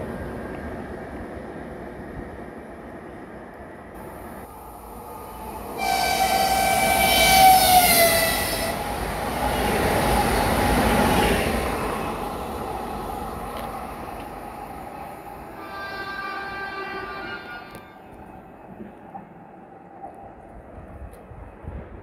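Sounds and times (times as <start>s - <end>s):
rush of train passing: 0.0s - 22.0s
train horn: 5.8s - 8.8s, 15.6s - 18.1s.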